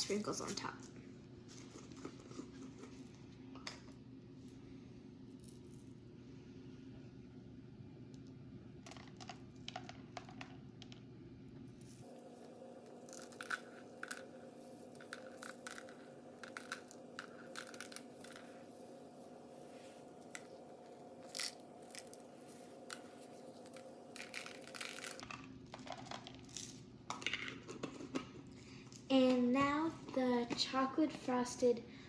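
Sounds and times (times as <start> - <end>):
steady low hum: 0.0 - 32.0
sprinkles clicking and crackling: 12.0 - 29.1.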